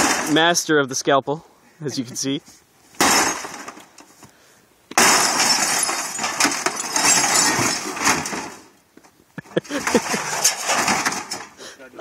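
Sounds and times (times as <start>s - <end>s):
television glass shattering: 0.0s - 0.5s, 3.0s - 3.9s, 4.9s - 8.7s, 9.7s - 11.6s
glass and debris clinking: 3.0s - 3.9s, 5.0s - 8.7s, 9.6s - 11.6s.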